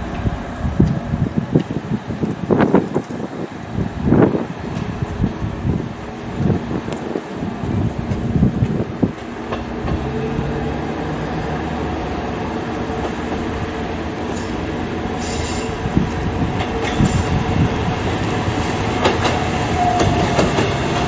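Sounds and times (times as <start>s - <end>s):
diesel railcar engine drone: 0.0s - 21.0s
rail clicks: 0.0s - 21.0s
high wheel squeal: 15.2s - 15.8s.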